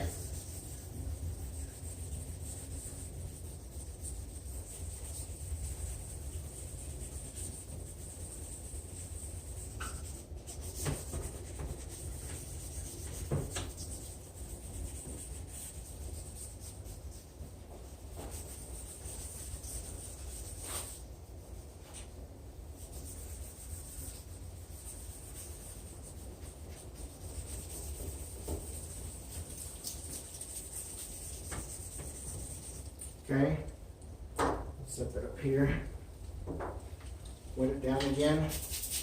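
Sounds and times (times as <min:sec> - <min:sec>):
sandpaper rubbing plastic: 0:00.0 - 0:17.2, 0:22.8 - 0:33.1, 0:38.3 - 0:39.0.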